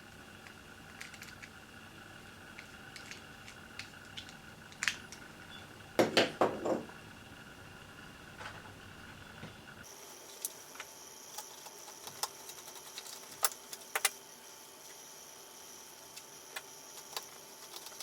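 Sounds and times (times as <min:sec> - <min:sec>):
clattering knocks: 0:06.0 - 0:06.9.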